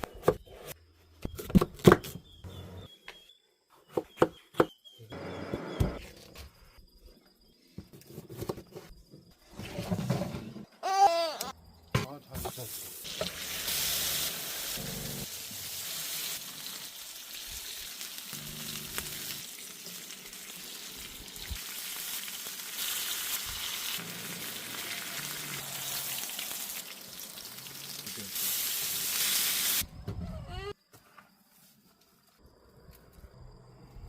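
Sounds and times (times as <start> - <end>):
steak sizzling: 12.6 - 29.8.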